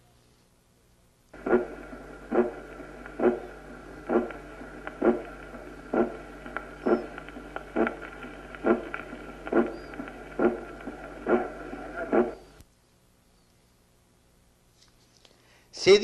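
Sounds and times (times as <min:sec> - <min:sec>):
faint steady hum: 0:00.0 - 0:16.0
heartbeat through stethoscope: 0:01.4 - 0:12.6.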